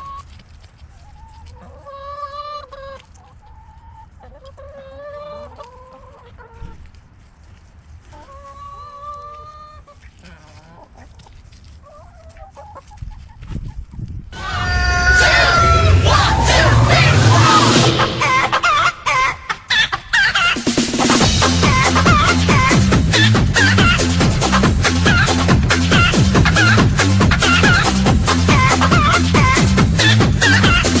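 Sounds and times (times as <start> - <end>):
chickens squawking: 0.9 - 6.9, 8.0 - 13.8, 14.4 - 31.0
loud burst of sound: 14.4 - 19.2.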